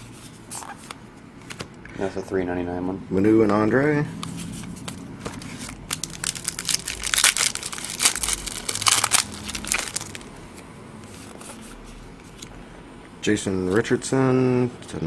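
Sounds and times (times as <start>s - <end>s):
foil wrapper crinkling and tearing: 5.6s - 10.3s.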